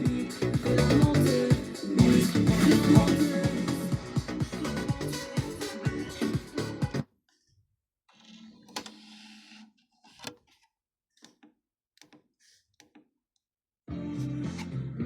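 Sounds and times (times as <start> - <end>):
music from car radio: 0.0 - 7.0.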